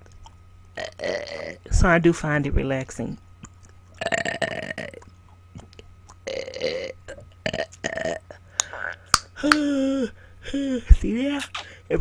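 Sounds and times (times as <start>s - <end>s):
woman burping: 4.0s - 5.0s, 6.2s - 8.4s.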